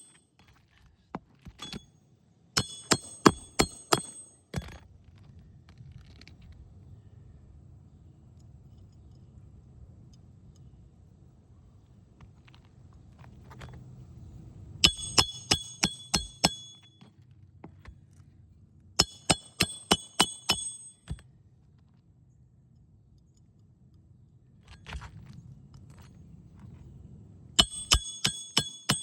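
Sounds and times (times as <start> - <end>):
hatchet hammering nails: 1.4 - 1.8, 2.6 - 4.8, 14.8 - 17.0, 19.0 - 21.2, 27.6 - 29.0.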